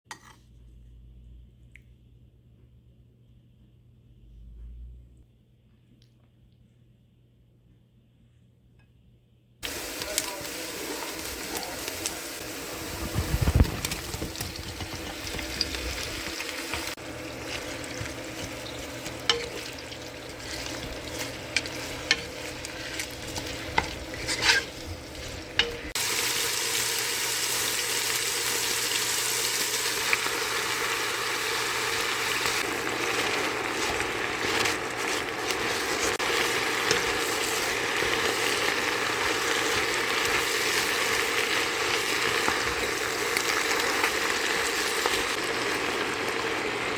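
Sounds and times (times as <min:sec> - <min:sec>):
food sizzling in a pan: 0:09.6 - 0:46.9.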